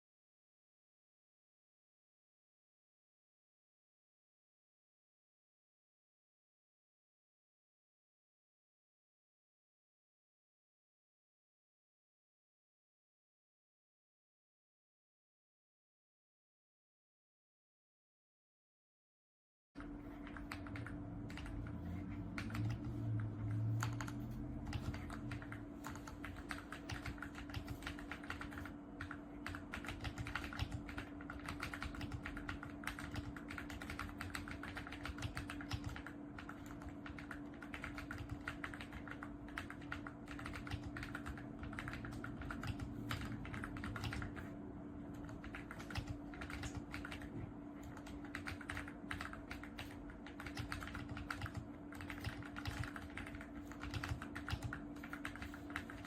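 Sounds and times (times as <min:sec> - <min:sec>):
mechanical keyboard typing: 0:19.8 - 0:44.5, 0:45.1 - 0:56.0
faint steady hum: 0:19.8 - 0:56.0.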